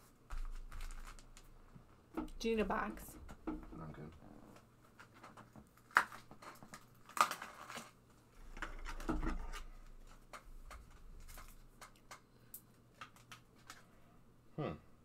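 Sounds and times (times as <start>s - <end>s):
cards and packaging rustling: 0.0s - 1.5s, 4.9s - 13.9s.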